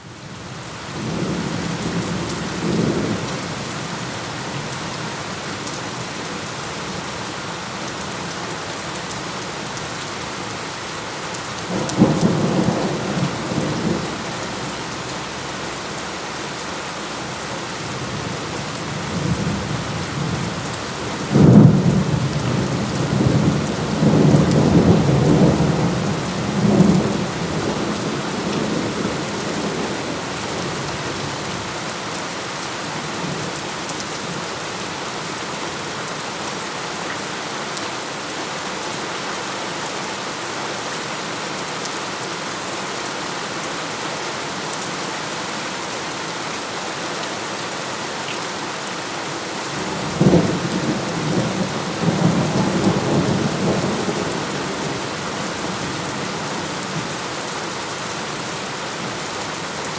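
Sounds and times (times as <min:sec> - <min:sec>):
heavy rain: 0:00.0 - 0:59.9
thunder rumbling: 0:49.8 - 0:56.6.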